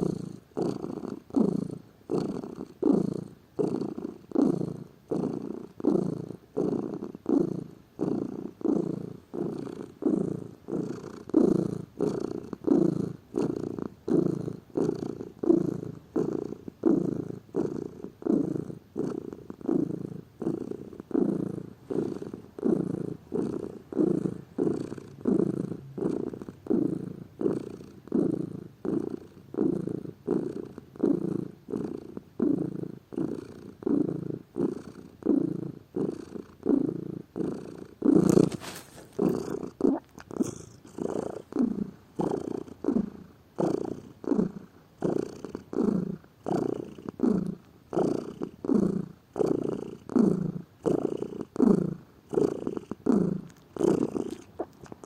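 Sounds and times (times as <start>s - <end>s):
cat purring: 0.0s - 55.0s.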